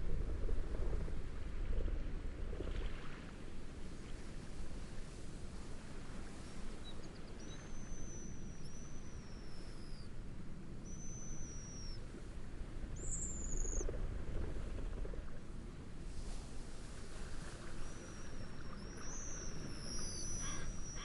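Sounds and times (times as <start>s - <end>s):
waves: 0.0s - 21.0s
wind: 0.0s - 21.0s
bird whistled calls: 7.4s - 10.1s, 10.8s - 12.0s, 17.9s - 21.0s.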